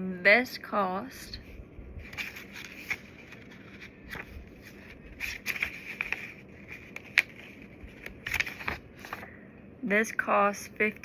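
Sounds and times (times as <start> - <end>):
packaging clicks and rustles: 2.0 - 9.3.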